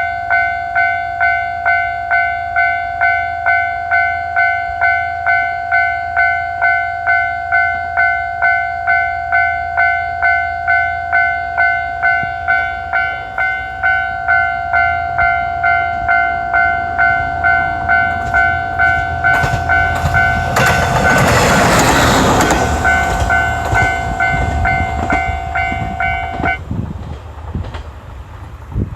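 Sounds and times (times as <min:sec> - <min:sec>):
level crossing warning bell: 0:00.0 - 0:26.6
train wheels clattering over rail joints: 0:17.9 - 0:28.8.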